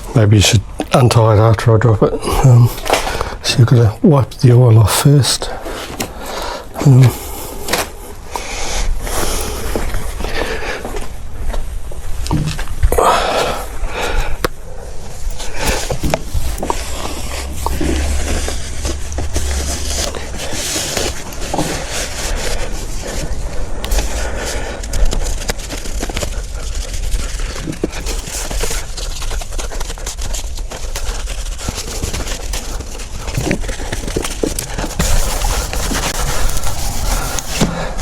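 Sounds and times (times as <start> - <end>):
low steady hum: 4.2 - 29.6
parts scraping and clicking: 30.9 - 38.0.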